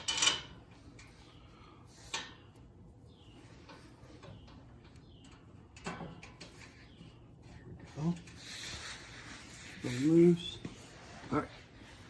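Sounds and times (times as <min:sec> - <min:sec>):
steel plate scraping and clunking: 0:00.0 - 0:00.8
faint rustling: 0:06.2 - 0:12.0.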